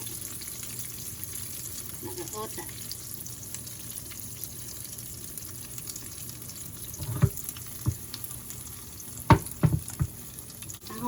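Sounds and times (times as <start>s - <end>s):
omelette sizzling in a pan: 0.0s - 11.0s
short knocks: 7.0s - 8.0s, 9.3s - 10.2s.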